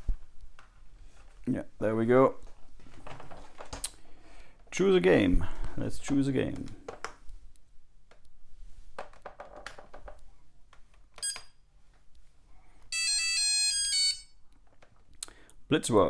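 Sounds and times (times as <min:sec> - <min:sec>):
electronic jingle of beeps: 0:12.9 - 0:14.3.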